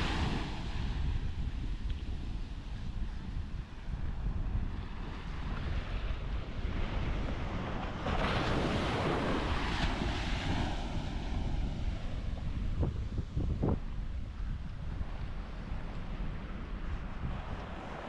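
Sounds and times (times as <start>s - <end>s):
breaking surf: 0.0s - 1.0s, 7.4s - 12.8s
surf washing on a beach: 0.0s - 18.0s
wind buffeting microphone: 0.0s - 18.0s.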